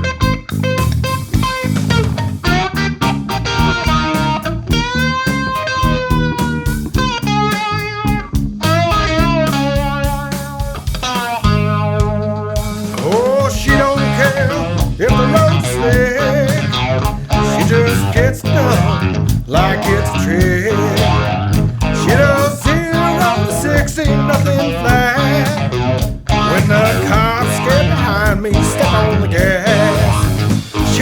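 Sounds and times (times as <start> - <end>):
bass guitar: 0.0 - 31.0
drums: 0.0 - 31.0
guitar lead with bent notes: 0.0 - 31.0.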